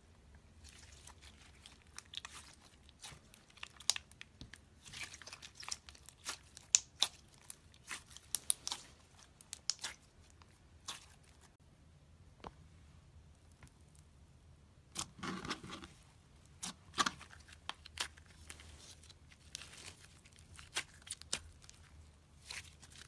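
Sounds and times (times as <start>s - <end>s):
slime squeezed crackling and popping: 0.7s - 11.5s, 16.6s - 23.0s.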